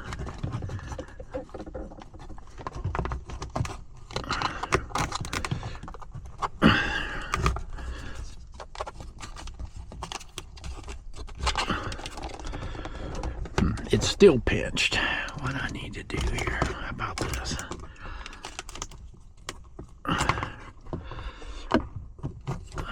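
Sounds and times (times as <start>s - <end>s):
plastic trim rustling and scraping: 0.0s - 22.9s.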